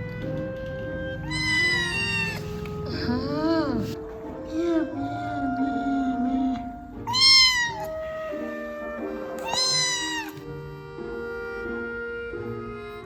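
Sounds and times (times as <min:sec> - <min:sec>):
soft background music: 0:00.0 - 0:13.0
kitten meowing: 0:01.2 - 0:02.7, 0:07.0 - 0:08.7, 0:09.3 - 0:10.5.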